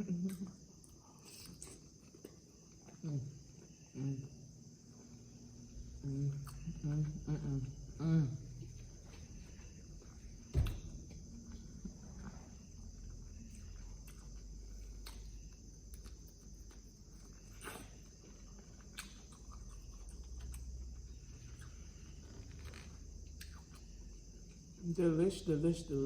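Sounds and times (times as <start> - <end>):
person eating mouth sounds: 0.0 - 4.4, 6.0 - 8.8.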